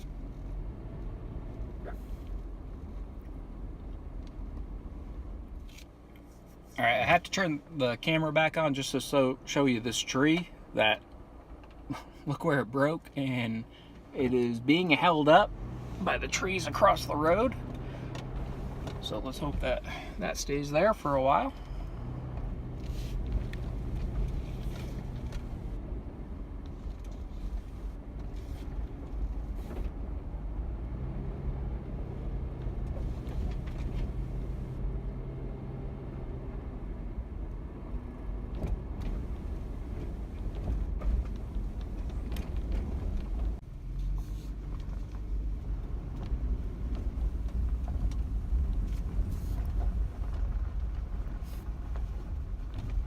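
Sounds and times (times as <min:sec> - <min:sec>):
road rumble on gravel: 0:00.0 - 0:53.0
vehicle engine running: 0:13.1 - 0:35.1, 0:35.7 - 0:53.0
knocks and rattles over bumps: 0:17.4 - 0:20.0, 0:38.4 - 0:43.6.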